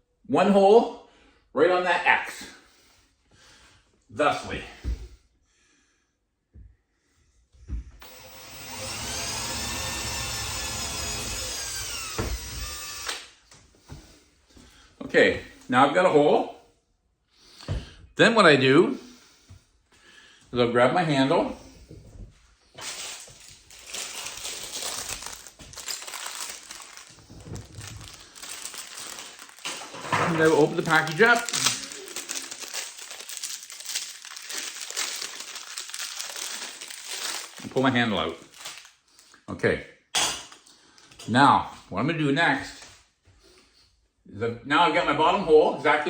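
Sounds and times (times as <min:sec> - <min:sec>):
power drill drilling: 0:08.0 - 0:13.4
packaging crinkling and rustling: 0:22.8 - 0:39.4.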